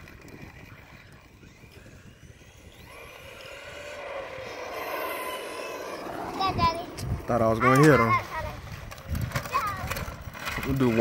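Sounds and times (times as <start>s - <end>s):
electric motor whining: 0.0s - 8.4s.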